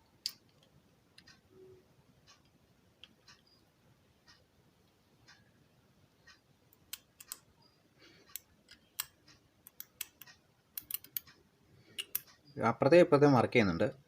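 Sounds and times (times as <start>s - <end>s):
small sharp clicks and taps: 6.2s - 12.4s.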